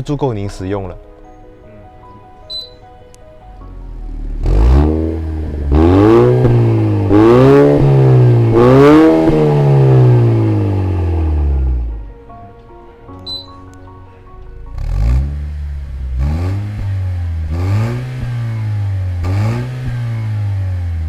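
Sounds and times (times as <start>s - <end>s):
car engine revving: 3.9s - 12.0s, 14.7s - 21.0s.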